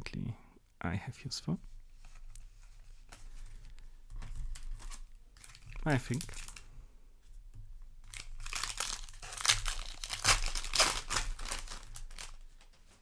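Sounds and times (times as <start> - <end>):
foil wrapper crinkling and tearing: 3.2 - 6.7, 8.0 - 12.6.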